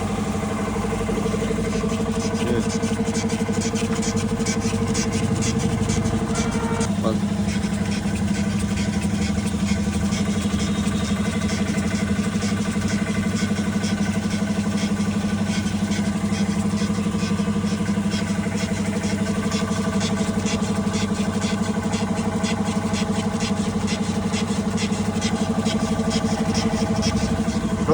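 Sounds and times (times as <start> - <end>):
car engine idling: 0.0 - 27.9.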